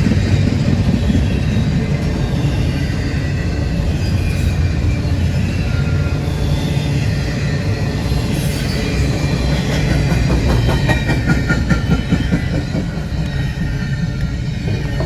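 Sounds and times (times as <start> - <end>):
freight train cars rumbling: 0.0 - 15.0
wheels clacking over rail joints: 8.0 - 15.0.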